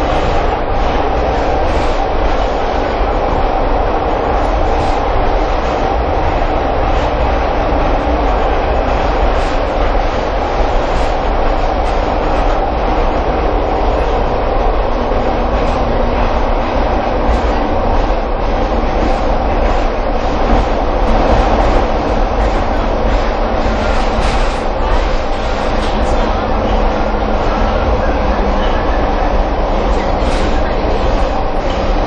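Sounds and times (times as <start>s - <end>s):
metro train rumbling: 0.0s - 32.0s
train whine: 0.0s - 32.0s.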